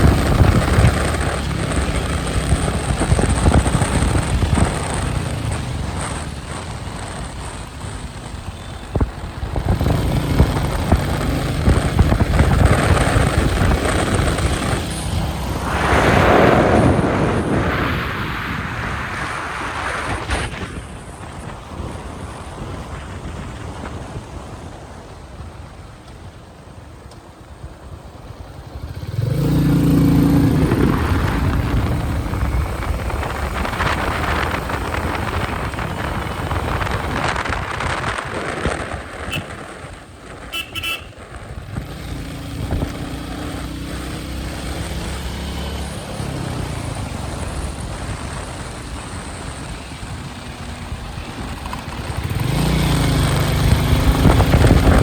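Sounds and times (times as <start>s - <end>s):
wind noise: 0.0s - 25.9s, 28.6s - 55.0s
motorcycle engine and exhaust: 0.0s - 55.0s
horn beeping: 40.5s - 41.2s.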